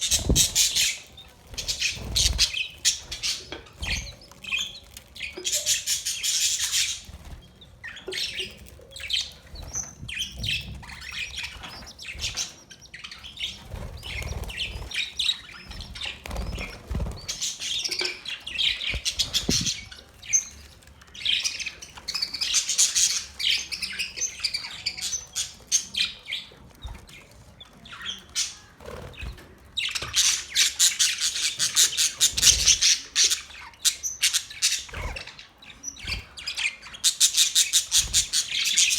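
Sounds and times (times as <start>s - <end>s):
budgerigars chattering: 0.0s - 26.5s, 27.1s - 38.9s.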